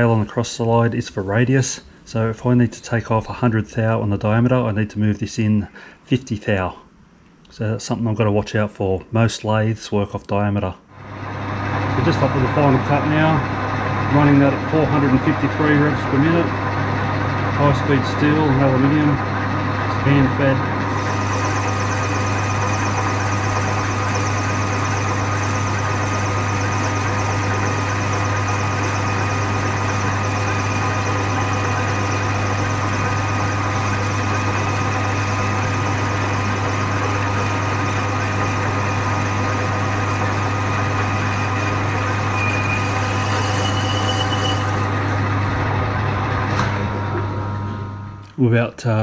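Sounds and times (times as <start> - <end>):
lathe motor hum and whine: 11.0 - 48.2
tool cutting metal bar: 20.8 - 45.7
faint higher whine: 36.0 - 45.8.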